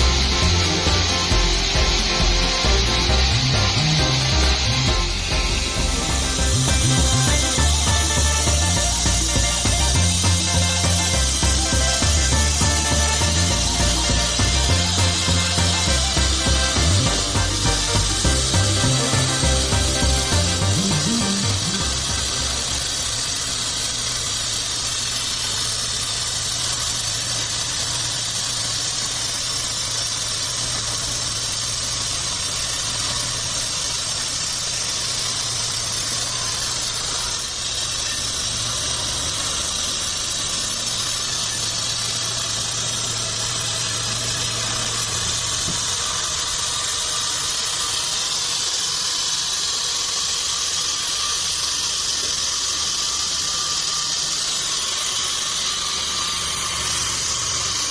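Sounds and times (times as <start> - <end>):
low machine hum: 0.0 - 25.6
saw blade hissing through wood: 0.0 - 57.9.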